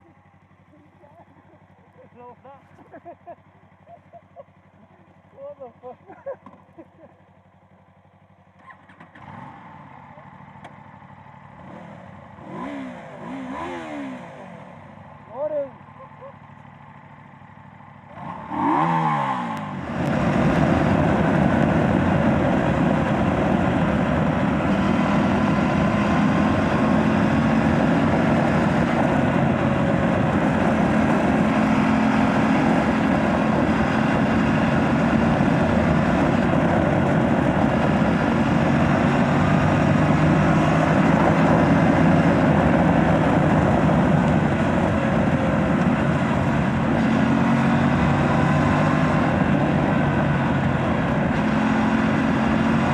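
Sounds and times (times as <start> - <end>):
motorcycle engine running: 0.0 - 52.9
wind rush on microphone: 20.0 - 52.9.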